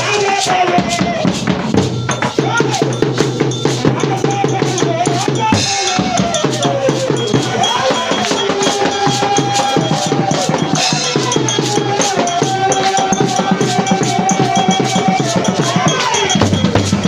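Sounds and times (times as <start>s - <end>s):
fast busy drums: 0.0s - 17.0s
shaken percussion: 0.0s - 17.0s
sliding melody line: 0.0s - 17.0s
live band music: 5.5s - 13.6s.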